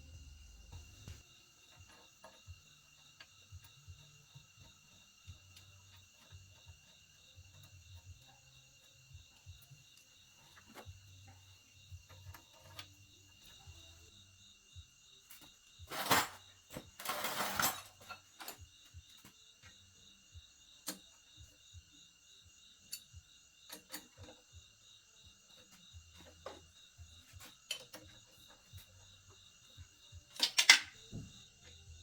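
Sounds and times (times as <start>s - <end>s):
insects chirping: 0.0s - 32.0s
metal parts clicking: 30.4s - 31.0s.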